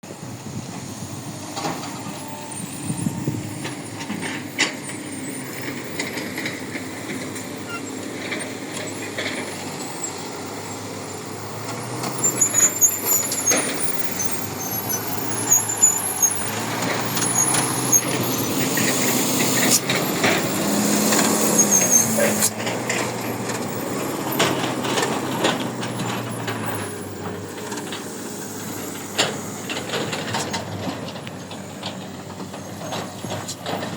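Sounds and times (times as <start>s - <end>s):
heavy diesel machinery running: 0.0s - 33.9s
short high squeals: 7.5s - 22.6s.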